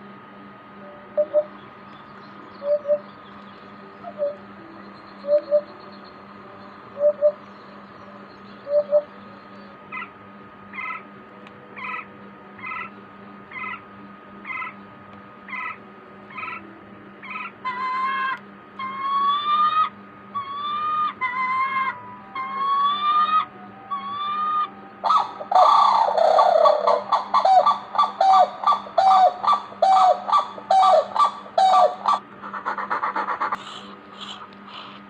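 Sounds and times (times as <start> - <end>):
low hoots: 7.0 - 7.4, 8.1 - 11.1, 17.2 - 35.0
long rising animal calls: 17.3 - 34.4.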